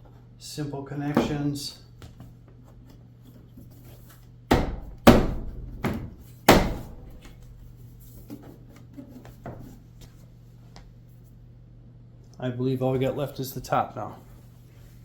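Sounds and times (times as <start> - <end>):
sharp knocks on panels: 4.5 - 7.5.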